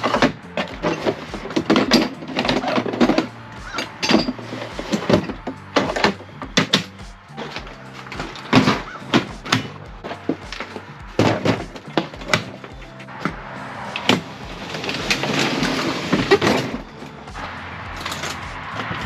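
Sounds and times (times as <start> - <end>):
background music with beat: 0.0 - 19.0
sharp knocks and clatter: 0.0 - 19.0
rushing noise: 12.8 - 19.0.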